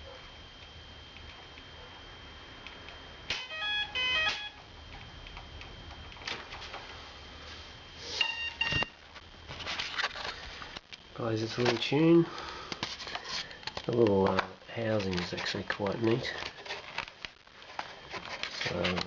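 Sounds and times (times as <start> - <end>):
motor controller startup beeps: 3.4 - 4.6, 8.2 - 8.9.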